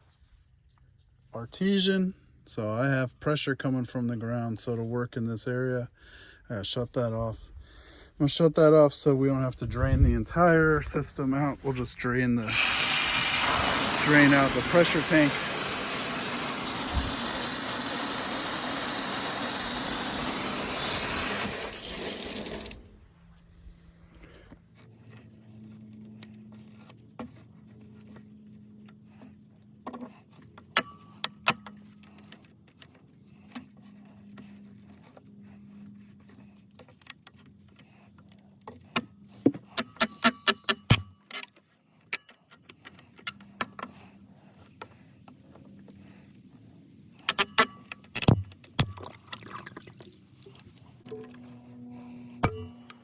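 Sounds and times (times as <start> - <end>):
water rushing under pressure: 12.4 - 22.8.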